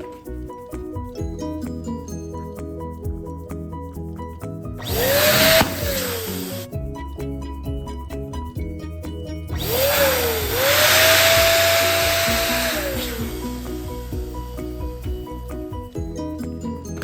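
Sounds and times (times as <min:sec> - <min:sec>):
light background music: 0:00.0 - 0:17.0
electric balloon pump whining: 0:04.8 - 0:06.8, 0:09.5 - 0:16.2.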